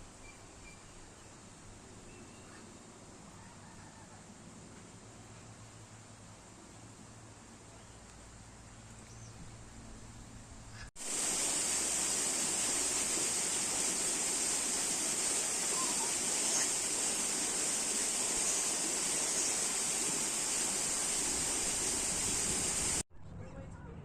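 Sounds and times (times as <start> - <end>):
rushing water: 11.0 - 23.0.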